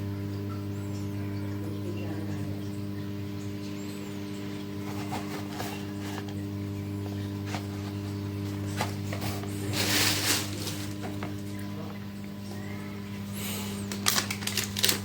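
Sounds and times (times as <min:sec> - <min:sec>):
microwave oven humming: 0:00.0 - 0:15.0
popcorn kernels popping: 0:13.9 - 0:15.0.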